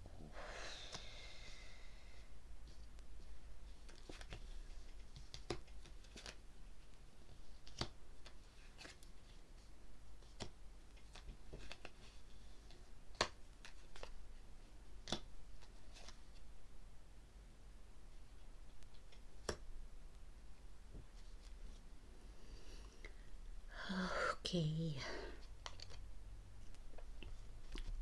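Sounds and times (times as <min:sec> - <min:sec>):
cards clicking and tapping: 0:07.6 - 0:09.0, 0:15.0 - 0:16.2, 0:19.1 - 0:19.6.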